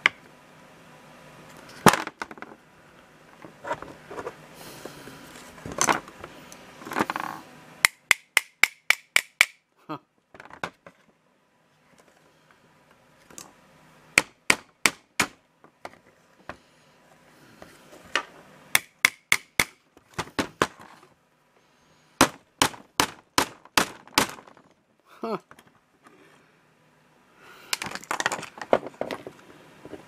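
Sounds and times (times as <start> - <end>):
hammer tapping a pin: 7.8 - 9.6.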